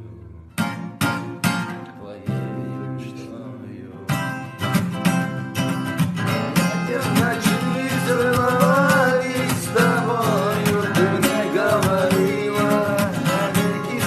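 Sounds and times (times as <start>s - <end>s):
acoustic guitar: 0.0s - 14.0s.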